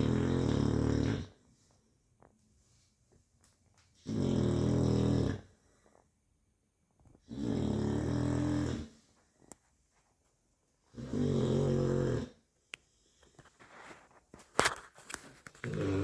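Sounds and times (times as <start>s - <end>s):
dog snoring: 0.0s - 1.4s, 4.0s - 5.8s, 7.2s - 9.0s, 10.9s - 12.5s, 15.6s - 16.0s.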